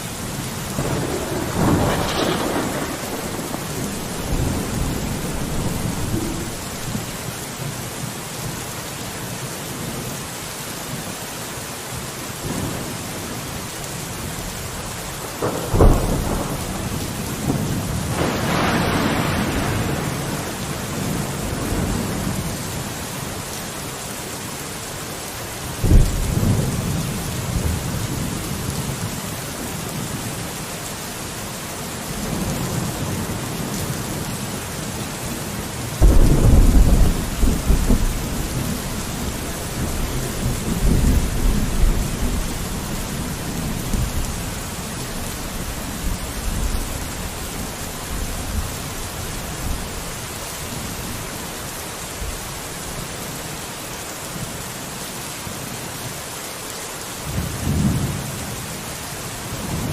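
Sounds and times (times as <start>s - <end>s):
rain on a window: 0.0s - 59.9s
thunder rumbling and cracking: 0.3s - 7.2s, 15.3s - 22.7s, 25.8s - 29.1s, 35.9s - 50.0s.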